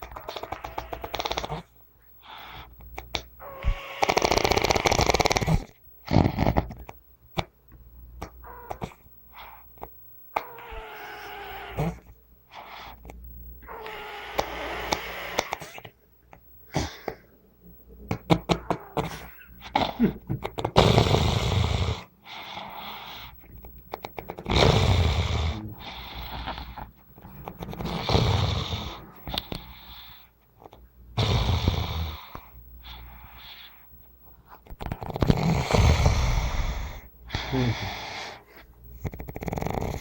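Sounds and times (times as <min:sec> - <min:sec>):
person snoring heavily: 0:00.0 - 0:01.7, 0:03.4 - 0:06.7, 0:13.6 - 0:15.8, 0:18.5 - 0:20.2, 0:20.8 - 0:23.4, 0:24.4 - 0:30.3, 0:31.2 - 0:33.8, 0:34.9 - 0:38.4, 0:39.0 - 0:40.0
quiet breaths: 0:00.0 - 0:40.0.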